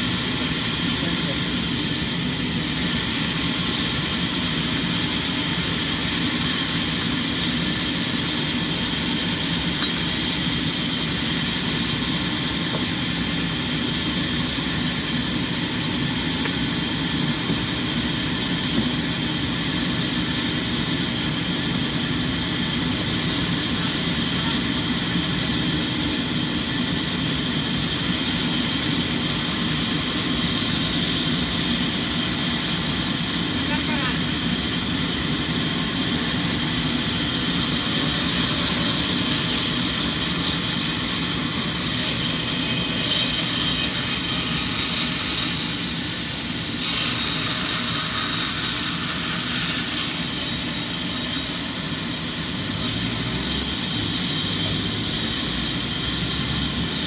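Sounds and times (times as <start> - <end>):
constant high whine: 0.0 - 57.0
sawmill machinery drone: 0.0 - 57.0.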